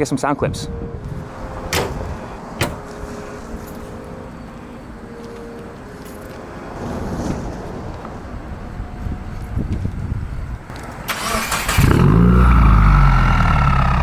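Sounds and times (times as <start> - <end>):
car engine low rumble: 7.0 - 14.0.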